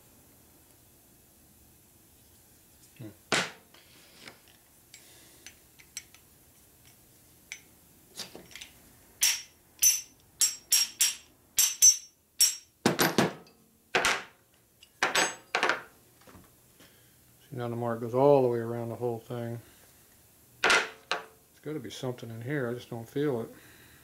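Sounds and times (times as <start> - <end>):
metal-on-metal taps and clinks: 4.9 - 6.2, 6.8 - 7.7, 8.4 - 14.2, 14.8 - 15.9.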